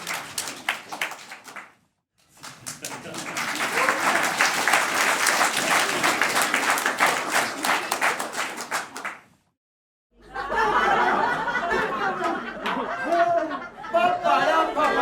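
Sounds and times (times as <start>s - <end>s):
audience applause: 0.0s - 1.7s, 2.3s - 9.3s
crowd shouting and cheering: 3.3s - 8.7s, 13.9s - 15.0s.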